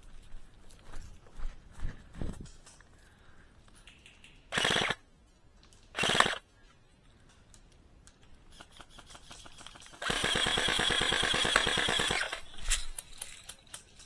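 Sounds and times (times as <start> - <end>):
airsoft gun firing bursts: 4.5 - 5.0, 6.0 - 6.4, 8.7 - 13.1.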